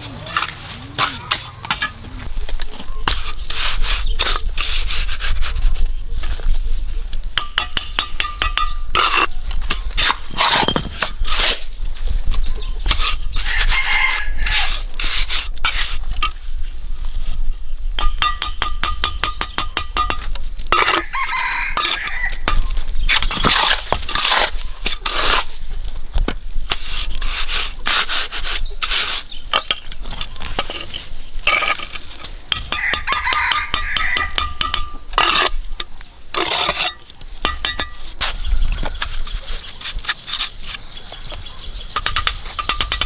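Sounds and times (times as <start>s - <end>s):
rooster crowing: 13.5s - 14.7s, 21.0s - 22.4s, 32.8s - 34.6s.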